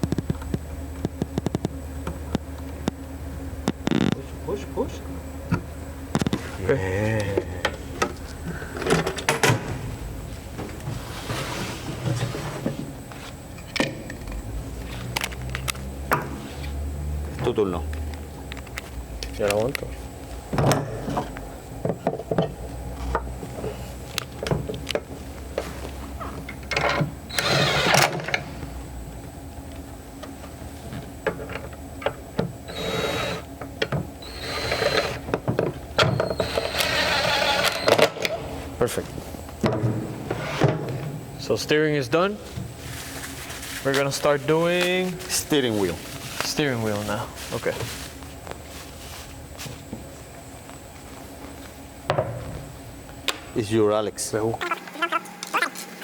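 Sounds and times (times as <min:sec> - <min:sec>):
power drill running: 0:27.3 - 0:28.4, 0:32.7 - 0:33.5, 0:34.2 - 0:35.3, 0:36.0 - 0:38.3.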